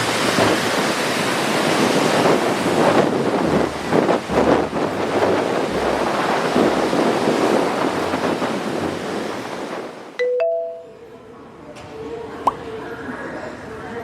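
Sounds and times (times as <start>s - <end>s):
waves breaking on beach: 0.0s - 10.2s
wind buffeting microphone: 0.0s - 10.2s
two-note chime: 10.2s - 11.1s.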